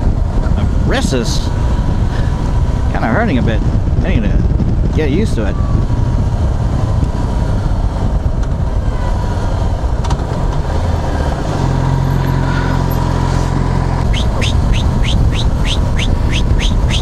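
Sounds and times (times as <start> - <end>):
motorcycle engine running: 0.0 - 17.0
wind and road noise: 0.0 - 17.0
high repeating chirp: 14.1 - 17.0.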